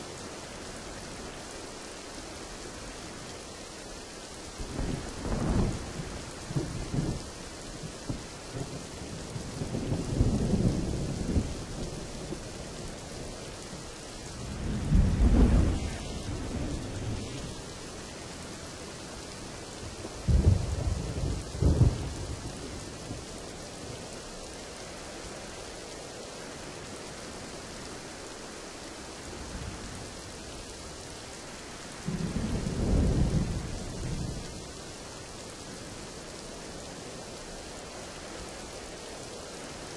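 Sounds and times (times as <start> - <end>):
steady rain: 0.0 - 39.9
thunder rumbling: 14.4 - 23.3, 32.0 - 34.7.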